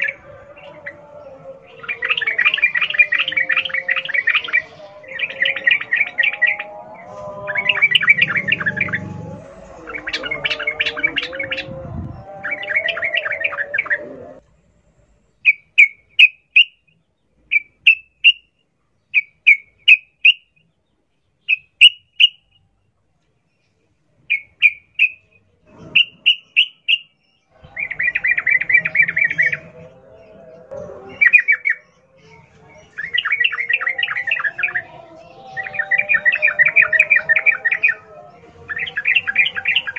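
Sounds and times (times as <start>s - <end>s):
soft low bird warbling: 5.2s - 14.4s.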